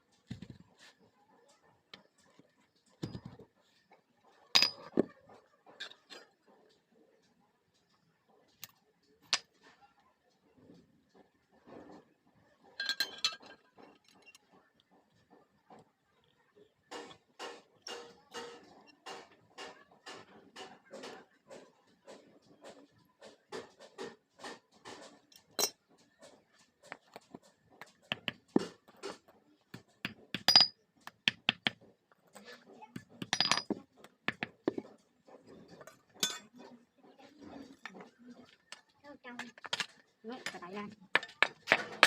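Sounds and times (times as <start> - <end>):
metal pieces clinking and knocking: 4.5 - 5.1, 12.8 - 14.4, 25.4 - 25.8, 30.3 - 31.6, 33.0 - 34.8.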